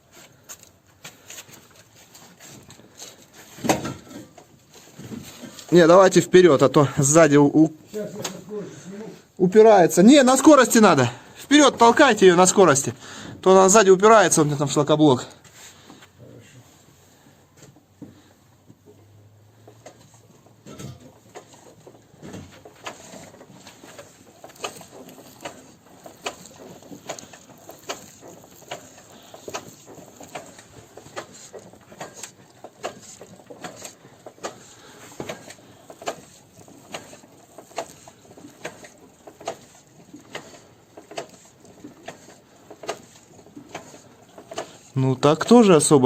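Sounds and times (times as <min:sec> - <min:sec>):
car suspension clicking and knocking: 0:18.7 - 0:45.9.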